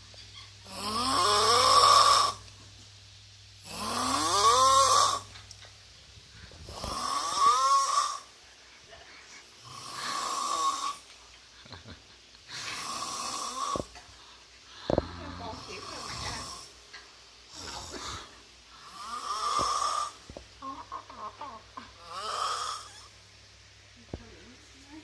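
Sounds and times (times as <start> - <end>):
person snoring: 0.6 - 2.4, 3.6 - 5.3, 6.6 - 8.3, 9.6 - 11.0, 12.5 - 14.0, 14.8 - 16.7, 17.5 - 20.2, 21.9 - 23.1.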